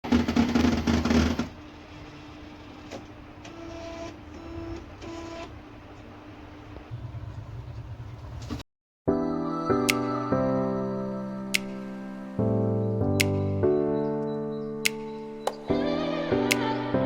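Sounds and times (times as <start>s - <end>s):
laser printer abnormal mechanical noise: 0.1s - 8.6s.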